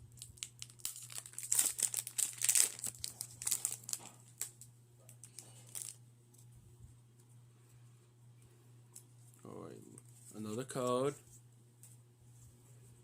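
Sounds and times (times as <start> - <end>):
foil wrapper crinkling and tearing: 0.2 - 6.0.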